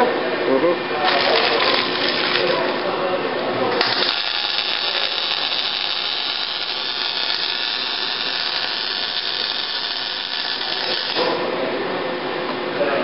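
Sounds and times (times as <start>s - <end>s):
welder arc crackling and hissing: 3.7s - 11.5s.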